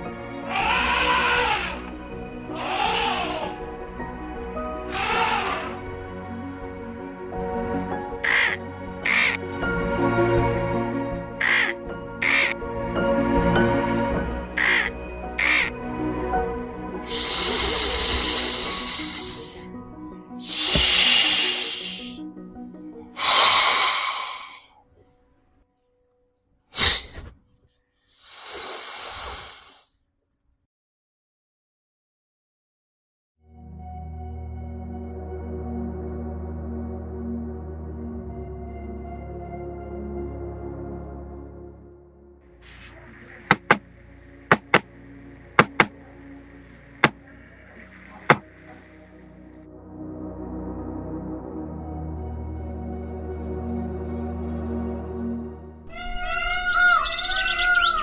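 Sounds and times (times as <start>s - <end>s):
quiet background music: 0.0s - 28.1s, 33.5s - 55.9s
breathy hissing bursts: 17.0s - 19.6s, 20.4s - 22.2s, 23.2s - 24.8s, 26.8s - 27.2s, 28.2s - 29.9s, 42.6s - 49.4s
sharp hard knocks: 43.5s - 43.8s, 44.5s - 44.9s, 45.6s - 46.0s, 48.3s - 48.5s.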